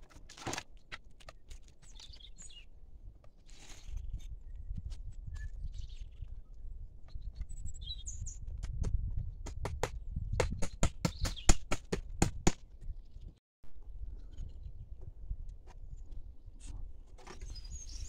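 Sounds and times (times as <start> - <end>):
bird chirping: 1.8 - 2.7, 7.1 - 8.4, 11.0 - 11.6, 17.4 - 18.0.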